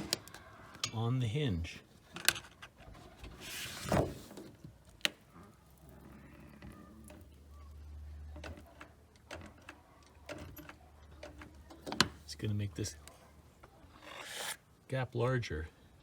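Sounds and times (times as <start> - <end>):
door brushing: 13.9 - 14.6.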